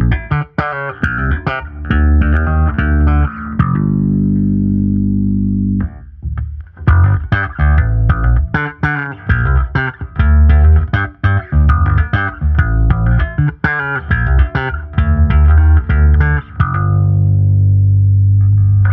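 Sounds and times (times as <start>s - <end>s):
bass guitar riff: 0.0s - 18.9s.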